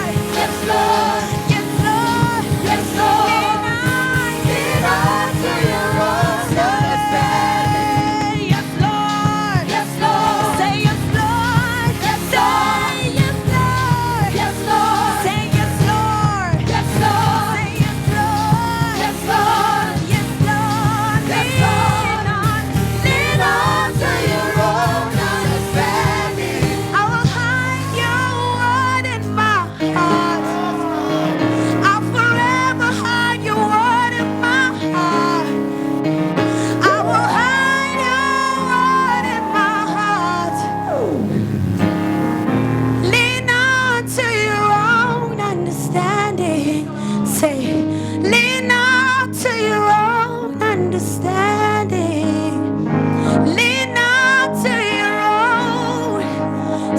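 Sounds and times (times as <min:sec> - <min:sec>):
sustained keyboard chords: 0:00.0 - 0:56.9
worship music with singers and band: 0:00.0 - 0:56.9.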